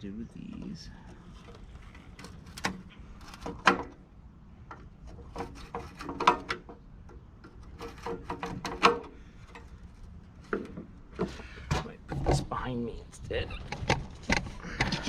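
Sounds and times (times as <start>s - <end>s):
parts scraping: 0.6s - 12.5s
metal parts tapping and knocking: 4.7s - 9.8s.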